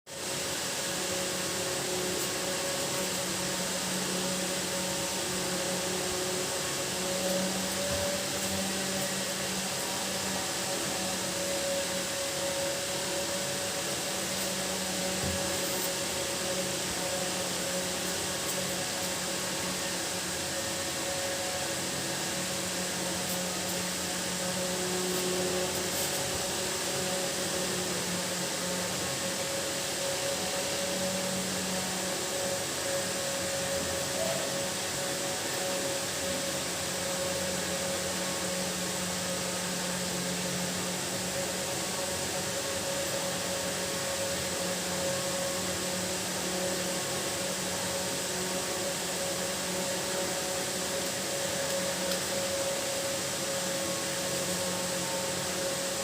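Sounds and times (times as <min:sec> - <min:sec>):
appliance humming: 0:00.1 - 0:56.0
steady machine hiss: 0:00.1 - 0:56.0.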